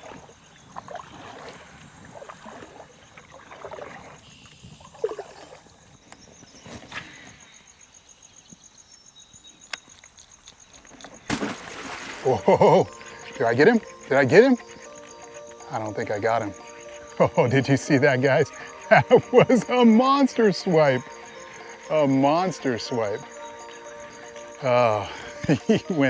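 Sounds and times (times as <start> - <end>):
soft water lapping kayak: 0.0 - 26.0
faint insect buzz: 5.7 - 26.0.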